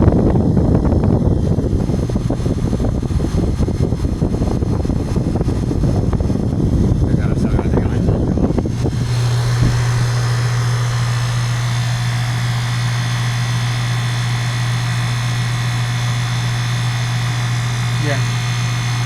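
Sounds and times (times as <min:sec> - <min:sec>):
compressor humming: 0:00.0 - 0:19.0
condenser fan whirring: 0:00.0 - 0:19.0.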